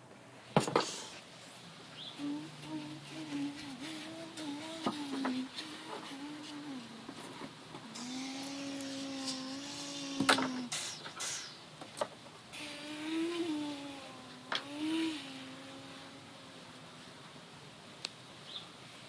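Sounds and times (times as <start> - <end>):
child imitating car engine: 2.2 - 7.1, 7.9 - 11.0.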